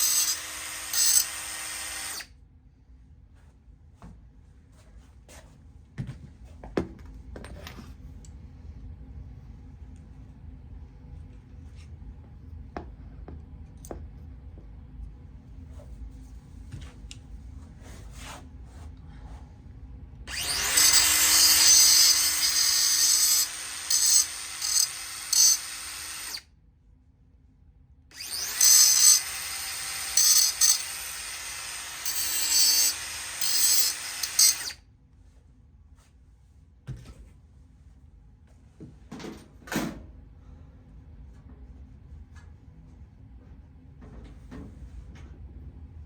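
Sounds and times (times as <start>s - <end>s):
electric power tool on car bodywork: 20.3s - 26.4s, 28.2s - 34.8s.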